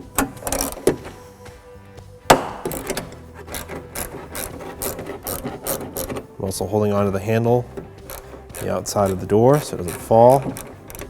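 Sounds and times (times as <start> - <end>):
ratchet clicking: 0.0 - 1.3, 2.3 - 6.3, 7.7 - 11.0
faint background music: 0.0 - 11.0
sharp metal clank: 2.3 - 3.2.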